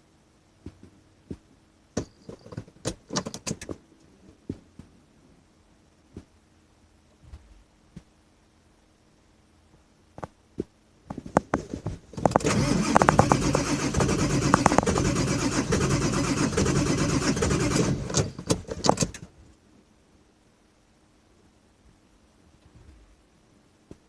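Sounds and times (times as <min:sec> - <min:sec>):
diesel engine cranking: 0:12.2 - 0:19.3.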